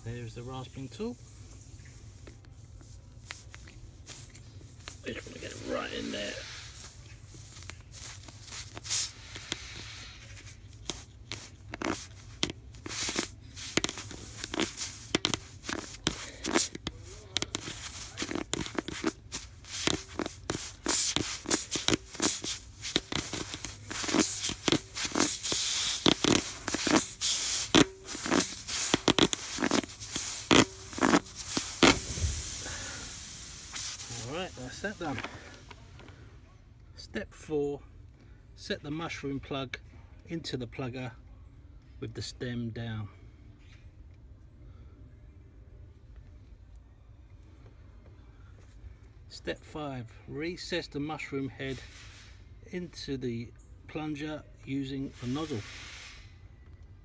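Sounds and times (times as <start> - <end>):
rasping tool scraping in tyre: 4.2 - 35.2.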